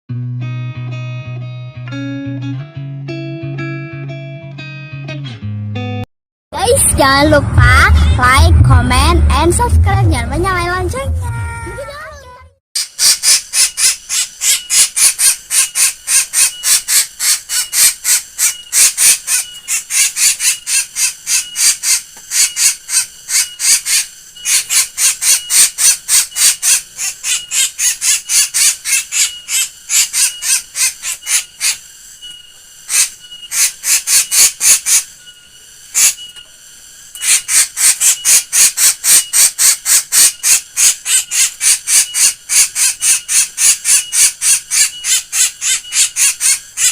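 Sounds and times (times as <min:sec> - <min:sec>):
bird cackling calls: 0:13.0 - 0:31.9, 0:37.2 - 0:46.9.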